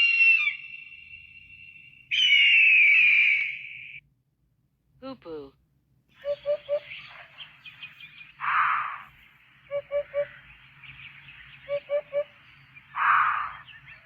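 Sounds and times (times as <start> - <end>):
faint bird chirps: 0.0 - 4.0, 6.1 - 14.0
hoopoe hooting: 6.2 - 7.1, 9.7 - 10.4, 11.6 - 12.4.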